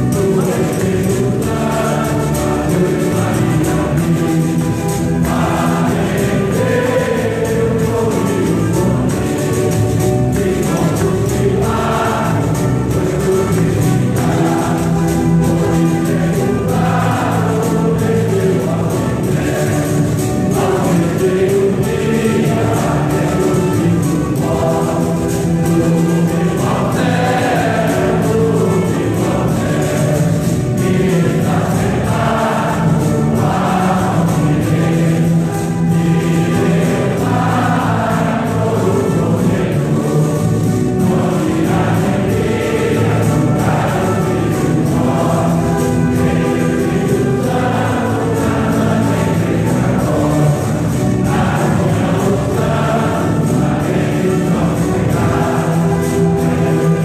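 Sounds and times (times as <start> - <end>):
choir singing: 0.0 - 57.0
instrumental accompaniment: 0.0 - 57.0.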